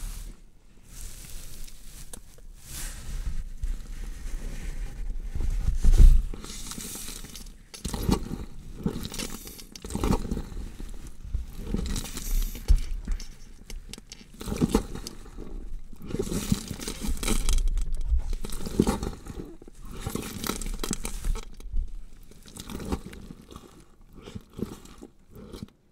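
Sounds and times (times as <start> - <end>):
flesh tearing and crunching: 16.0 - 25.8.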